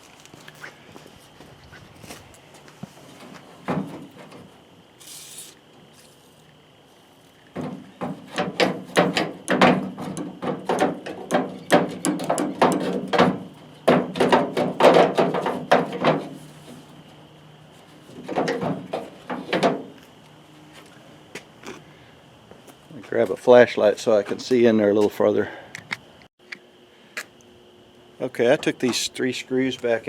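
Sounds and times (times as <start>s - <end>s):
rapid metallic clicks and knocks: 7.6s - 16.3s.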